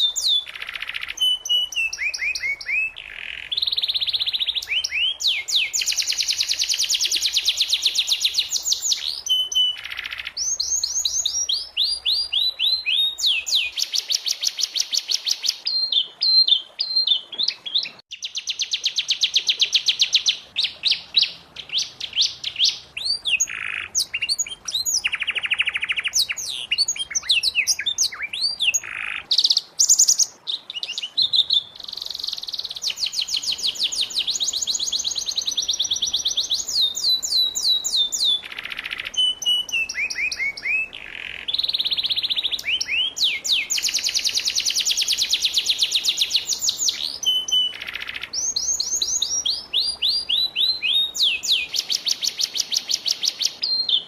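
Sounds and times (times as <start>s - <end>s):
canary singing trills: 0.0s - 54.0s.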